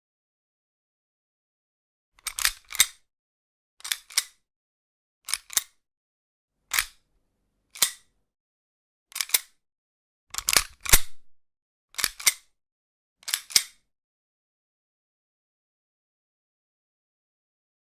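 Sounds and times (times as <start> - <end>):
handgun cocking clicks: 2.2 - 3.0, 3.8 - 4.4, 6.7 - 7.0, 7.8 - 8.0, 9.1 - 9.5, 10.3 - 11.3, 12.0 - 12.4, 13.2 - 13.8.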